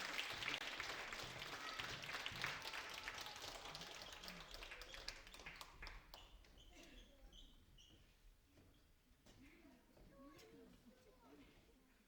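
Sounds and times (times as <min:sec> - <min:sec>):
audience applauding: 0:00.0 - 0:06.2.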